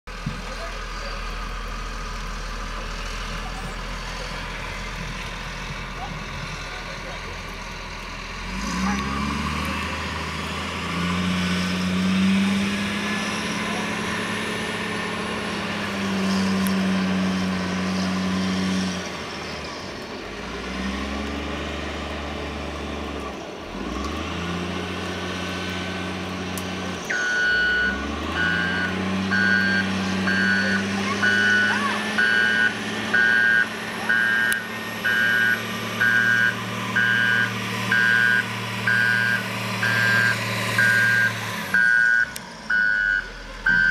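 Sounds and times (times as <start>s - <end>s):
tractor engine revving: 0.0s - 43.9s
reversing alarm beeping: 27.1s - 43.9s.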